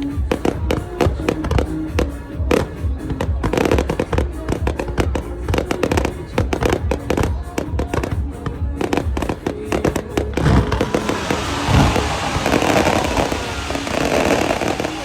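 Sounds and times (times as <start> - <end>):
fireworks popping and crackling: 8.9 - 15.0.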